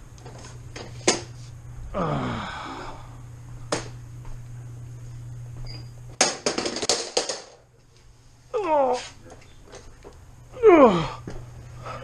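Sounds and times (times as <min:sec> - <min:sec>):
steady low hum: 0:00.0 - 0:12.0
short falling groan: 0:01.9 - 0:03.1, 0:10.5 - 0:11.4.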